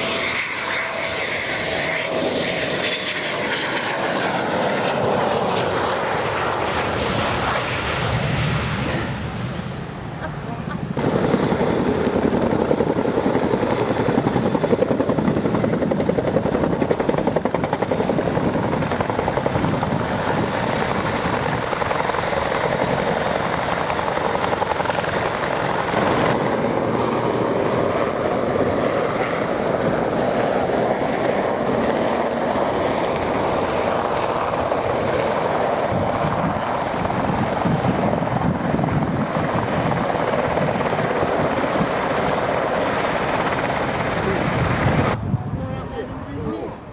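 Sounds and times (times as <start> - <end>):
helicopter flying: 0.0 - 46.9.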